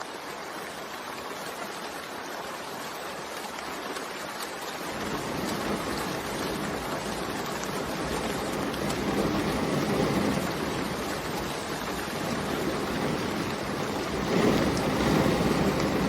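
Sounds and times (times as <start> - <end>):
steady rain hiss: 0.0 - 16.0
deep rumbling: 4.8 - 16.0.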